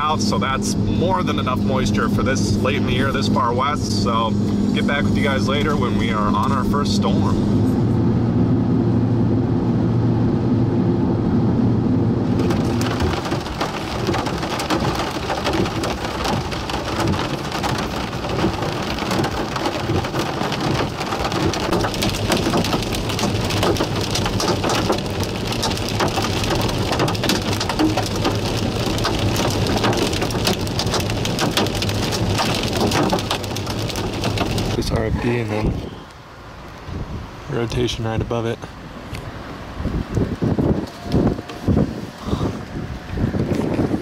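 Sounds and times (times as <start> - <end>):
vehicle engine and road hum: 0.0 - 44.0
heavy rain falling: 12.1 - 36.4.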